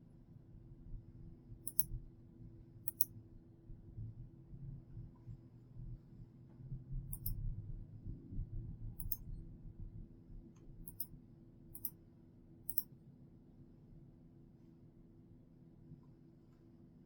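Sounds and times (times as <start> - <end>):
faint low rumble: 0.1 - 11.9
computer mouse clicks: 1.7 - 1.9, 2.9 - 3.1, 7.1 - 7.4, 9.0 - 9.2, 10.9 - 11.1, 11.8 - 12.0, 12.7 - 12.9.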